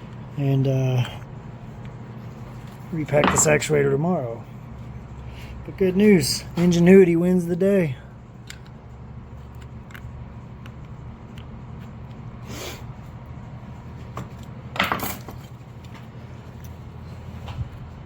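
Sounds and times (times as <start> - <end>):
steady low hum: 0.0 - 18.0
metal tools clinking and rattling: 2.5 - 3.7, 14.8 - 15.6.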